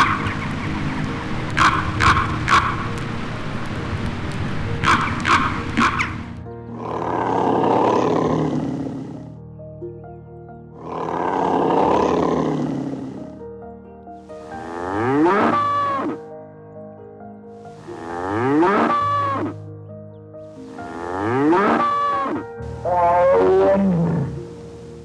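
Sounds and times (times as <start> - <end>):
music bed: 0.0 - 25.0
cow mooing: 6.8 - 9.2, 10.8 - 13.2, 14.6 - 16.2, 17.8 - 19.6, 20.8 - 24.5
hoarse animal calls: 10.8 - 13.3, 14.7 - 16.2, 17.8 - 19.6, 20.8 - 24.6.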